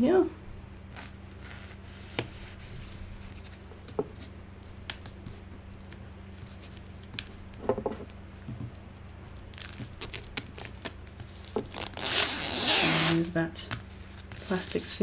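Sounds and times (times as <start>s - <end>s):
low hum: 0.0s - 12.1s
plastic wrap crinkling: 9.3s - 15.0s.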